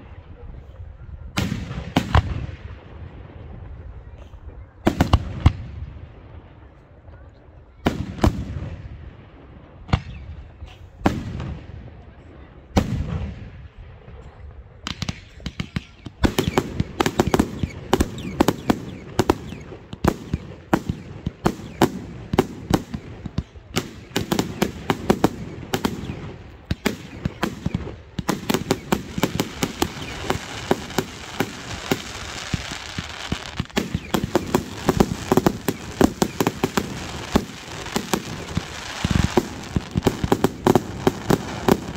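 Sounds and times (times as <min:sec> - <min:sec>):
fireworks bangs: 0:12.7 - 0:41.9
fireworks crackling: 0:14.9 - 0:41.9.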